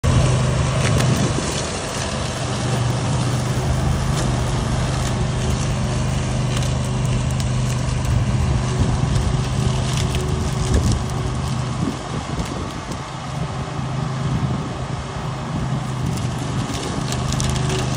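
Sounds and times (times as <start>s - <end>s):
mower engine running: 0.0s - 17.9s
cracks and ticks: 5.0s - 13.5s, 16.0s - 17.9s.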